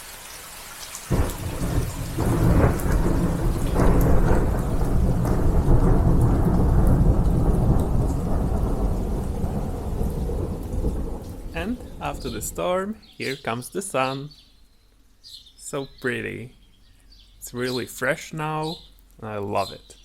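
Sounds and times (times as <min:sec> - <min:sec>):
steady rain: 0:00.0 - 0:13.4
thunder rumbling: 0:01.1 - 0:13.0.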